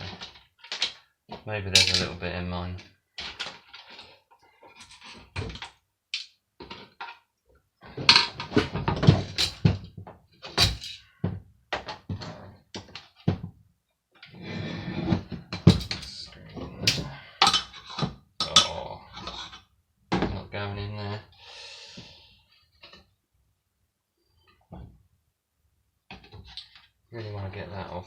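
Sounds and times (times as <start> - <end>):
tools knocking and scraping on metal: 1.8 - 2.1, 8.0 - 12.2, 15.5 - 19.6.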